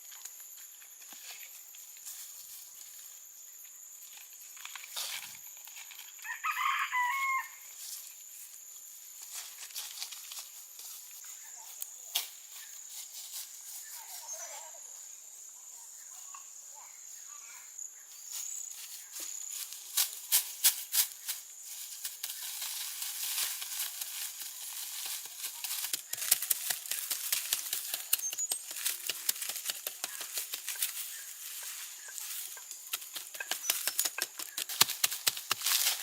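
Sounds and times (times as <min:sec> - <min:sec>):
sharp clicks and taps: 0:32.9 - 0:35.7.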